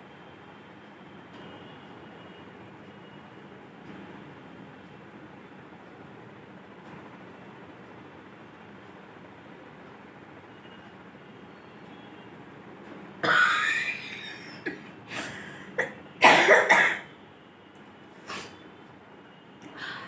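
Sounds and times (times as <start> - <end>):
woman coughing: 13.2 - 17.1.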